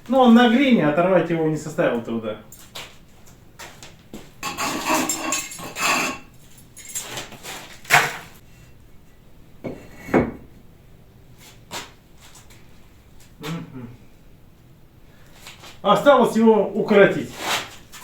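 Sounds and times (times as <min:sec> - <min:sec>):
brick scraping on masonry: 0:04.4 - 0:06.4.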